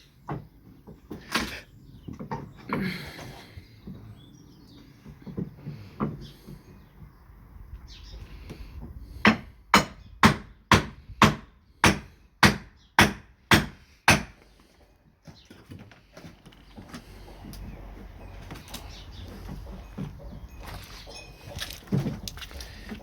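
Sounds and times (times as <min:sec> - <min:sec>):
hammer striking wood: 0:09.2 - 0:14.4.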